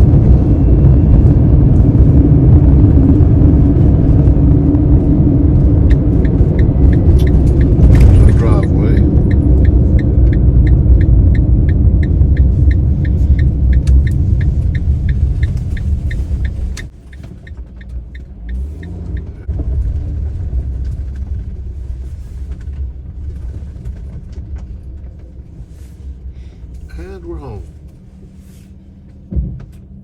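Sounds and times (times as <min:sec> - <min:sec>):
van road and engine rumble: 0:00.0 - 0:30.0
even ticking: 0:05.8 - 0:19.4.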